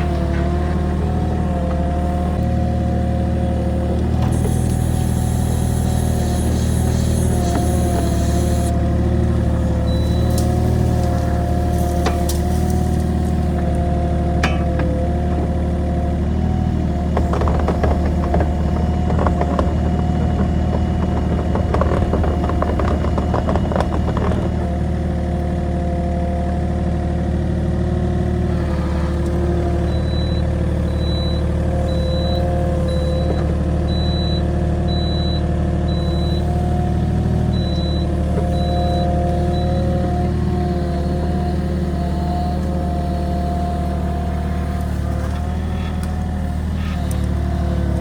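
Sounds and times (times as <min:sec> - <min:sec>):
heavy machine engine under load: 0:00.0 - 0:48.0
wood clattering and cracking: 0:05.8 - 0:25.2.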